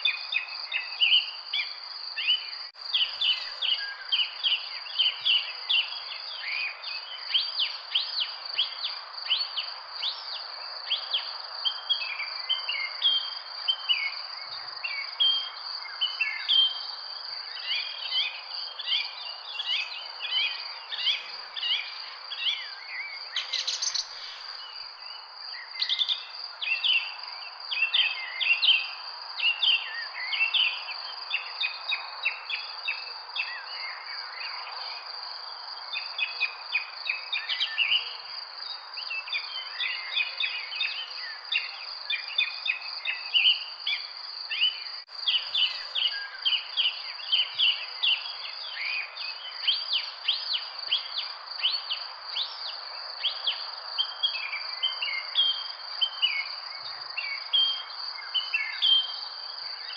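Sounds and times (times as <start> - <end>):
birds chirping and singing: 0.0 - 8.7, 17.7 - 27.1, 39.6 - 52.8
background hiss: 0.0 - 14.0, 14.6 - 32.5, 33.3 - 59.9
insect trill: 0.0 - 59.9.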